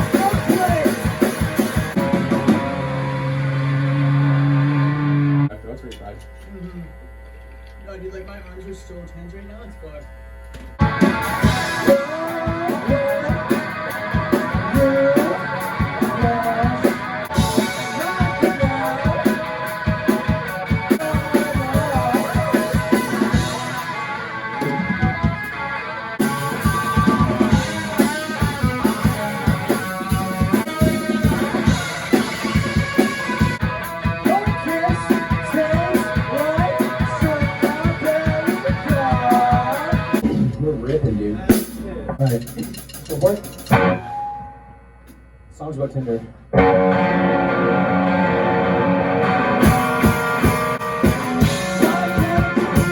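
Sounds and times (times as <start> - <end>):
drum-kit beat: 0.0 - 3.4, 10.8 - 45.2, 49.5 - 52.9
electric guitars: 0.0 - 7.8, 10.5 - 41.6, 43.4 - 45.2, 46.5 - 52.9.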